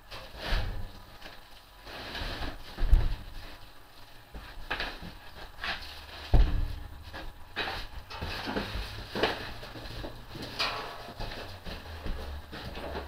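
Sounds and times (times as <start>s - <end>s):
packaging scraping and rustling: 7.0s - 13.0s.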